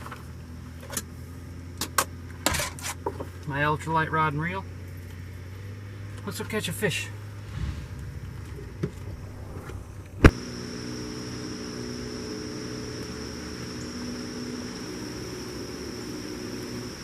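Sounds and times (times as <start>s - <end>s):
faint outdoor noise: 0.0s - 17.0s
low steady hum: 7.1s - 17.0s
high-pitched insect buzz: 10.3s - 17.0s.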